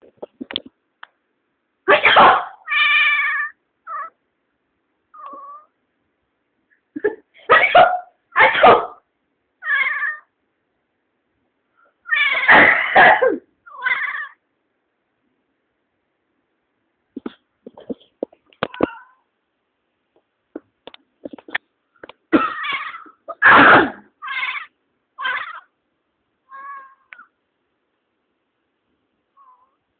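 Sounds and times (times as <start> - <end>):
cat meowing: 2.6 - 4.2, 5.2 - 5.8, 9.6 - 10.3, 12.0 - 12.6, 13.7 - 14.4, 18.6 - 19.3, 22.4 - 23.5, 24.2 - 25.7, 26.5 - 27.3, 29.4 - 29.8
person sneezing: 12.4 - 13.5, 23.3 - 24.1.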